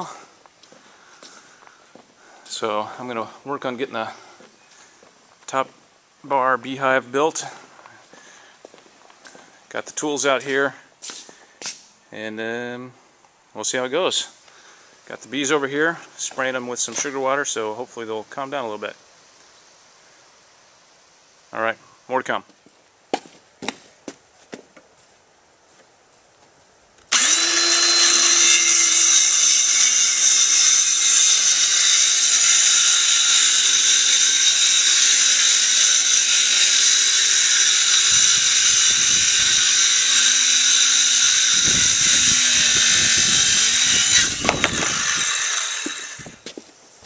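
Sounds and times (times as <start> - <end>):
electric power tool running: 27.1 - 46.4.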